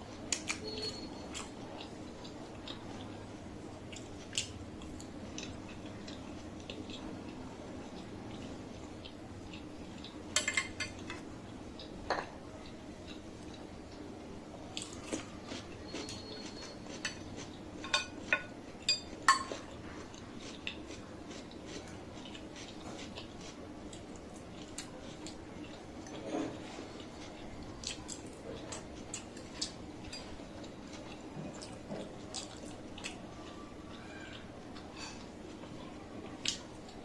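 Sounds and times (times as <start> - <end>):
cutlery clinking against a plate: 10.3 - 11.2, 15.9 - 19.8.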